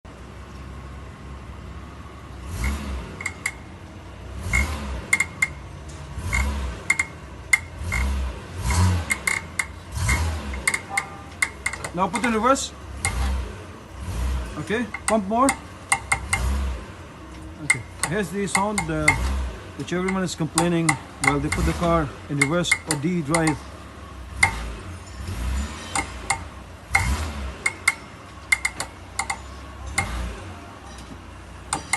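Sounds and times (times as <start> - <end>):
rear axle clunking: 2.1 - 31.9
sharp metallic clicks and knocks: 2.6 - 3.8, 4.4 - 13.5, 14.4 - 31.9
sharp metallic clinks: 2.6 - 3.8, 4.5 - 13.4, 17.4 - 31.9.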